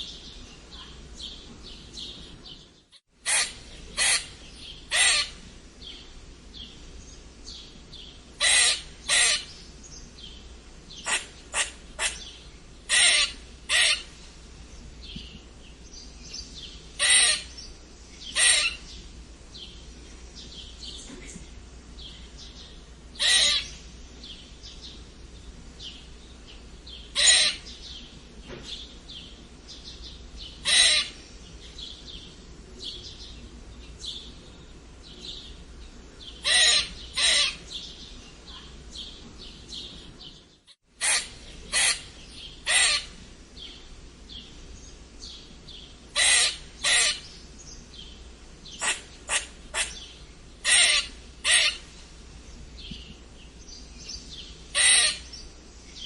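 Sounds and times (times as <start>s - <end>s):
faint continuous chirping: 0.0s - 56.0s
squirrel squeaking: 3.2s - 5.4s, 8.4s - 9.5s, 12.9s - 14.1s, 17.0s - 17.6s, 18.3s - 18.8s, 23.2s - 23.7s, 27.2s - 27.7s, 36.4s - 37.6s, 41.0s - 43.1s, 46.2s - 47.3s, 48.8s - 51.8s, 54.8s - 55.3s.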